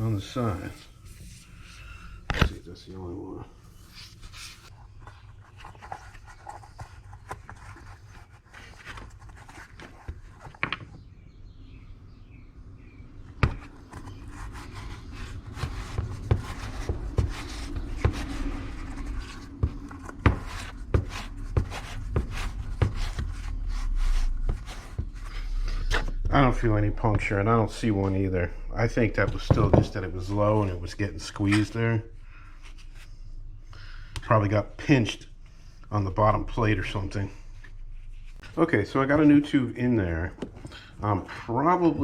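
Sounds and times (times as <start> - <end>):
low hum: 11.0 - 34.1
hands rubbing rubber tyre: 13.4 - 27.4.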